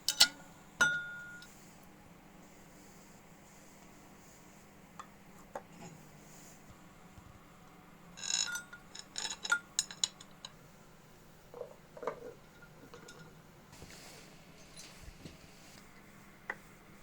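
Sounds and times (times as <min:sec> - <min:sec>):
metal parts and tools clinking: 0:00.0 - 0:00.4, 0:08.2 - 0:10.6.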